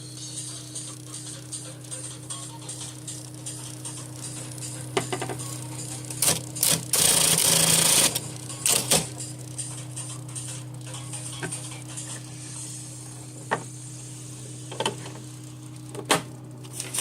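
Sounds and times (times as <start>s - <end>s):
electric typewriter motor humming: 0.0s - 17.0s
sharp mechanical typewriter strokes: 6.2s - 9.1s.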